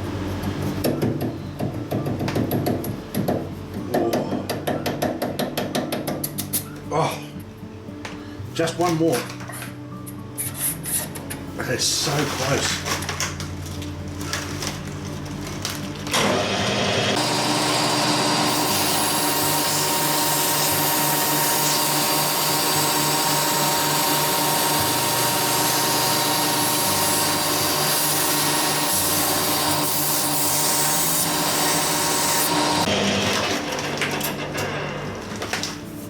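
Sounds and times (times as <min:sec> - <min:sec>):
metal lathe humming: 0:16.2 - 0:34.4
shaft being sanded: 0:17.2 - 0:32.9.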